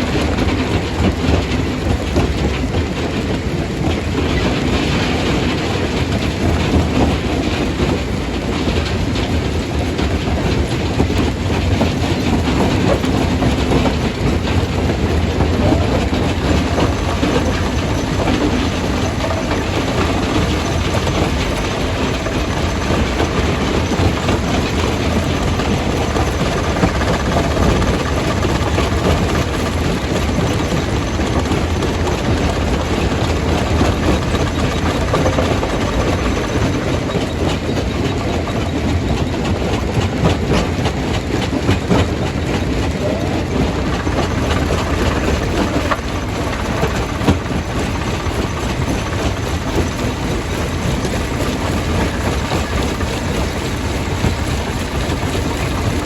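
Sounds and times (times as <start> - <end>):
low machinery rumble: 0.0 - 56.0
rock rattling and knocking: 11.8 - 37.6.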